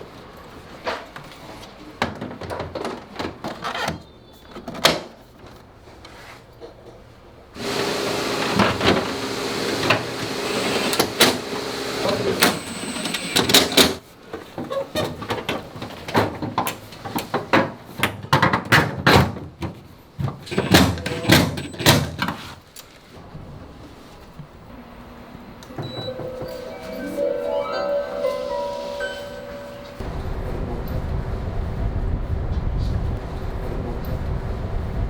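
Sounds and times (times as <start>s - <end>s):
mechanical whir: 30.0s - 35.0s.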